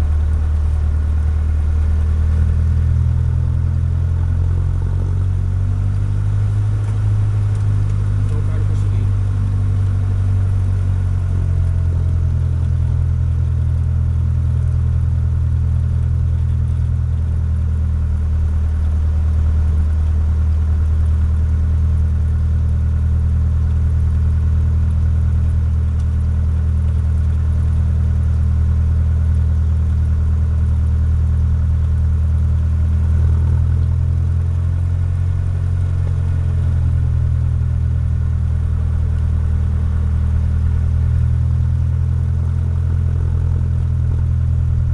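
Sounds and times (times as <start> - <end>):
small plane engine running: 0.0 - 44.9.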